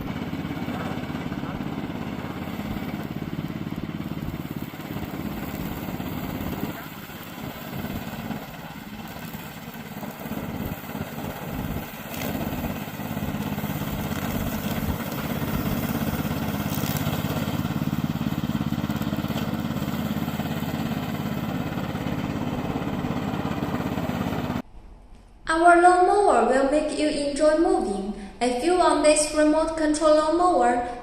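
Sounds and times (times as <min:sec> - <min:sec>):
mower engine running: 0:00.0 - 0:24.6.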